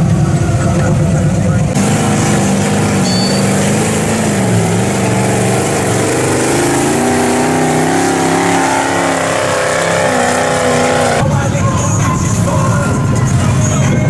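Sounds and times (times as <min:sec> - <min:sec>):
vehicle engine revving: 0:00.0 - 0:11.2.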